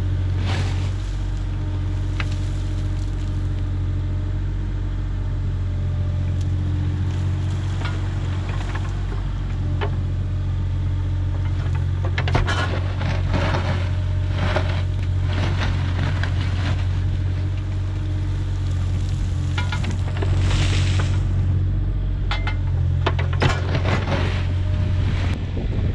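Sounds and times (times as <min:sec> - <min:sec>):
engine running steadily: 0:00.0 - 0:25.9
scraping and clattering: 0:00.3 - 0:03.5, 0:07.1 - 0:10.0, 0:11.4 - 0:21.4, 0:22.3 - 0:25.4.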